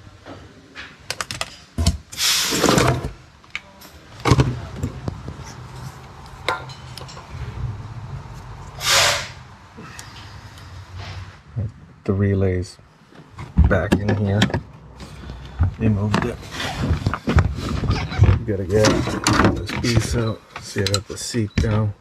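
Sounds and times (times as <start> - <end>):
clicks and knocks on car parts: 4.2 - 5.4, 13.2 - 14.7
scraping rustles: 15.0 - 20.4.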